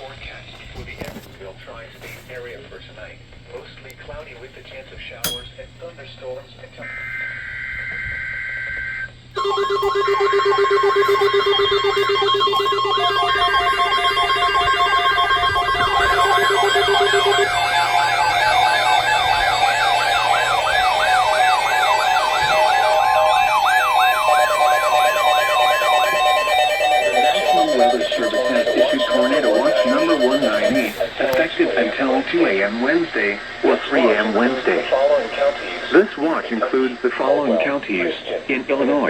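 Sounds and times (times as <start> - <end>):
siren-like warble: 6.8 - 32.1
steady high alert tones: 9.4 - 31.4
rapidly pulsing low beep: 9.4 - 32.0.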